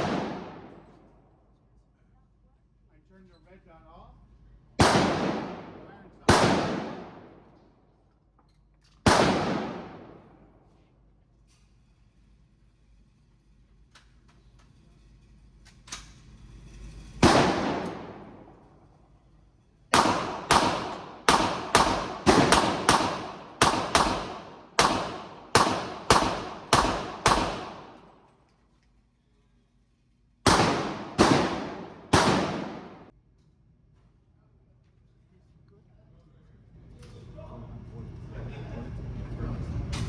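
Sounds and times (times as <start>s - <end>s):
gunshots: 0.0s - 0.9s, 4.8s - 7.5s, 9.0s - 10.5s, 17.2s - 18.6s, 19.9s - 28.2s, 30.5s - 33.1s.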